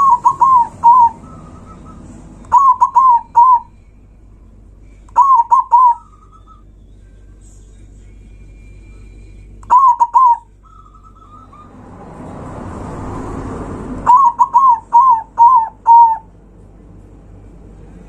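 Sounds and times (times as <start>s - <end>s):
dove cooing: 0.0s - 3.7s, 5.2s - 6.4s, 9.7s - 11.7s, 14.0s - 16.3s
rushing noise: 11.4s - 18.0s.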